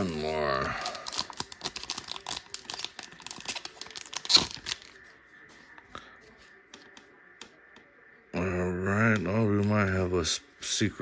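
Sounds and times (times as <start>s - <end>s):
wrapper tearing and crinkling: 0.0s - 5.0s.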